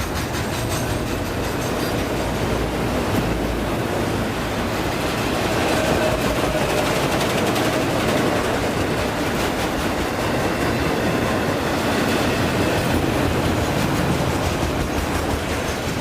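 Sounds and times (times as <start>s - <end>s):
clicking over rail joints: 0.0s - 3.5s
train wheels rumbling on rails: 0.0s - 16.0s.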